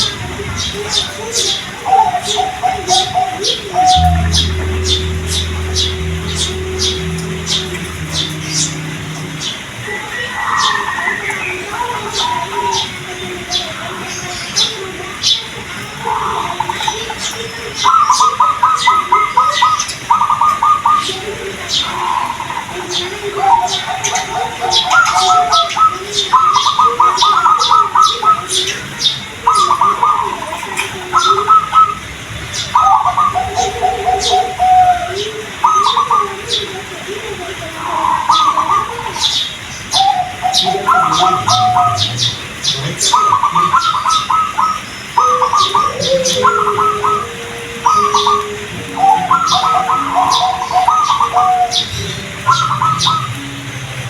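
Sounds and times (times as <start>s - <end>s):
doves cooing: 40.0s - 53.4s.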